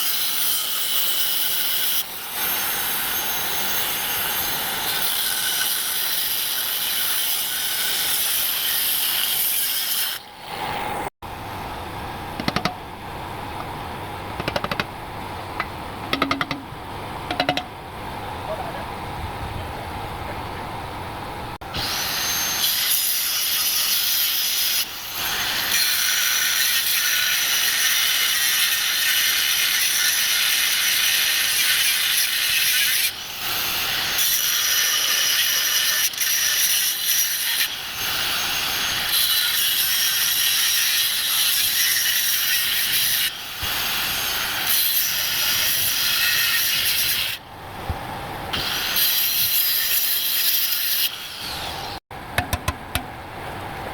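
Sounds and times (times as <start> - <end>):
power cutting tool running: 21.6 - 22.8.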